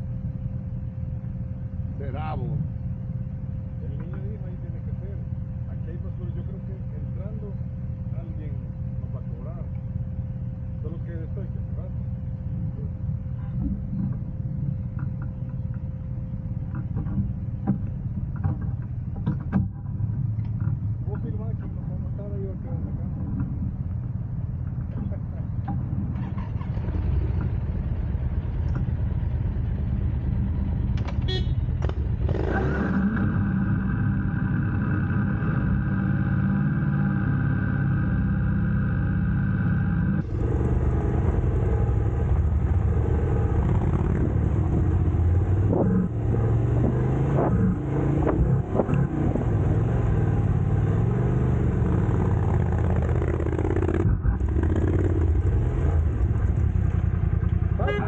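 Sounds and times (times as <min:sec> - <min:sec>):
motorcycle engine rumbling: 0:00.0 - 0:58.0.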